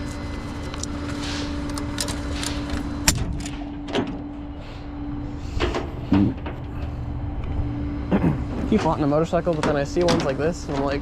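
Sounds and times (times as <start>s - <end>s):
idling vehicle hum: 0.0s - 11.0s.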